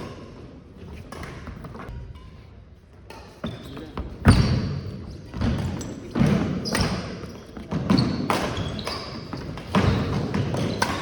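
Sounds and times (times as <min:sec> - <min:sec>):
shoe squeaks: 0:03.4 - 0:11.0
rackets hitting shuttlecock: 0:05.4 - 0:11.0.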